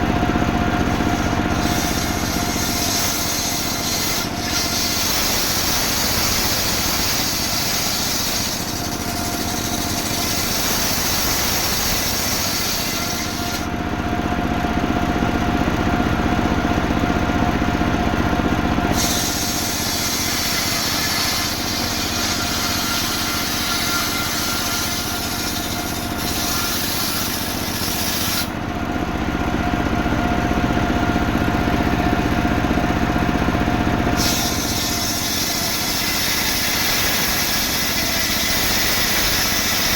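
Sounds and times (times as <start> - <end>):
saw engine running: 0.0 - 39.9
saw rasping through trunk: 0.8 - 13.7, 18.9 - 28.5, 34.1 - 39.9.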